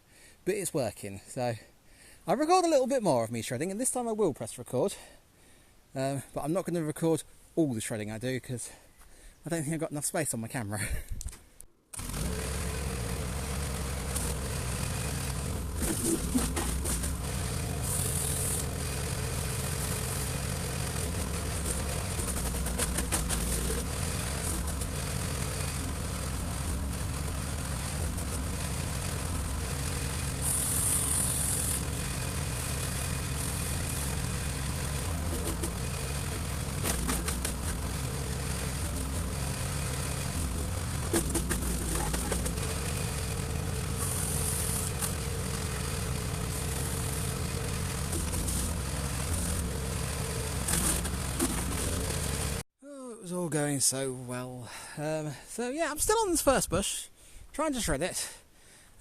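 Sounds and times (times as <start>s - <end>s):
garden shredder running: 11.9s - 52.6s
wood crackling in shredder: 11.9s - 52.6s.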